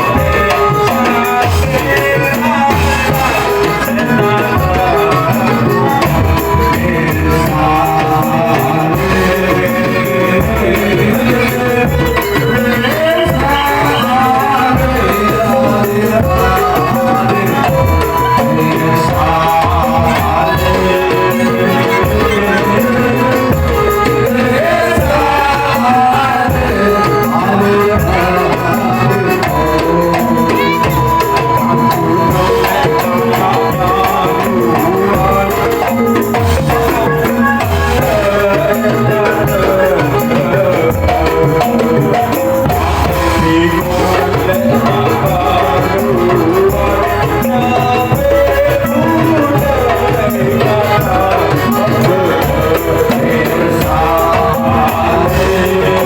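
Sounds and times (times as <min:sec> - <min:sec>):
percussion strokes: 0:00.0 - 0:56.0
traditional folk music: 0:00.0 - 0:56.0
wavering melody line: 0:11.3 - 0:34.3.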